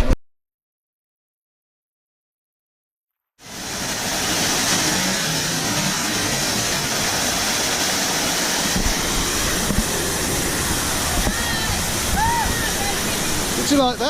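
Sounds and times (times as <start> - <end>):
rushing water: 3.4 - 14.0
wind buffeting microphone: 3.7 - 14.0.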